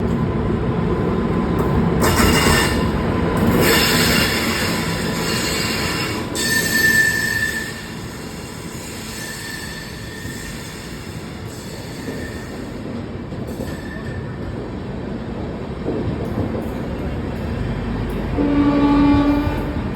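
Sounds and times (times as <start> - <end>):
train rumbling on track: 0.0 - 19.9
train wheel squeals: 2.0 - 14.6.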